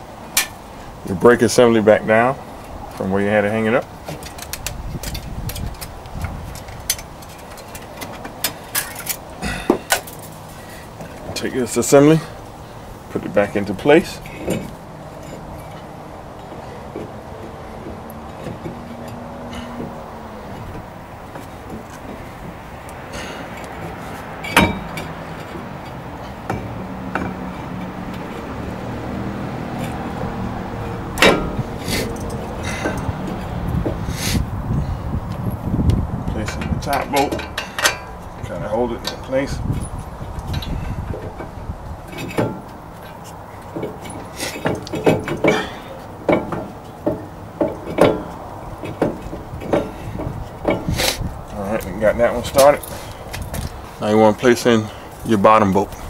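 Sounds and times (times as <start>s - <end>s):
metal clanks of brake caliper: 4.1s - 10.4s, 13.5s - 17.2s, 17.8s - 34.1s, 36.4s - 53.8s.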